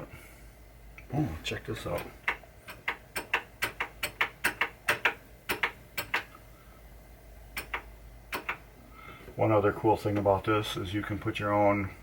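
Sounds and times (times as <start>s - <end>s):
pinball machine clicks: 2.0s - 6.3s, 7.6s - 8.6s.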